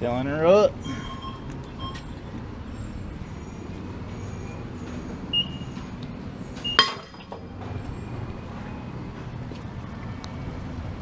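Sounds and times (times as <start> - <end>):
short high beep: 0.8 - 2.1
sharp metallic clack: 6.7 - 7.5.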